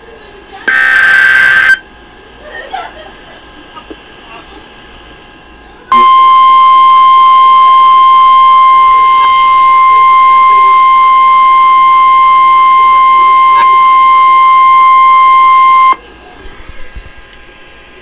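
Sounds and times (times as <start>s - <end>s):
steady alarm beep: 0.7s - 1.8s, 5.9s - 16.0s.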